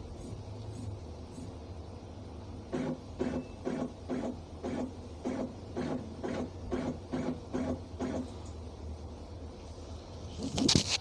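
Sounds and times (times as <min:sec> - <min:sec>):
stepper motor buzzing hum: 0:02.6 - 0:08.4.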